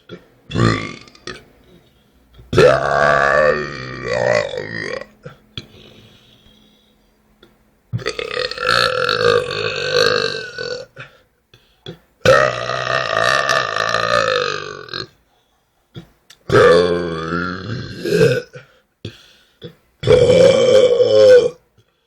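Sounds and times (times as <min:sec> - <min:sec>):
person burping: 0:00.0 - 0:01.8, 0:02.5 - 0:06.0, 0:07.9 - 0:11.2, 0:11.9 - 0:15.2, 0:16.0 - 0:21.6.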